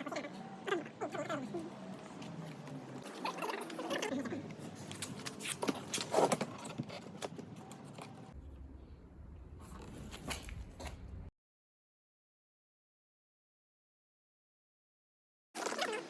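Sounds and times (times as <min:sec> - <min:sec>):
handling clicks and scrapes: 0:01.5 - 0:08.4, 0:09.5 - 0:11.3
low hum: 0:08.0 - 0:11.3.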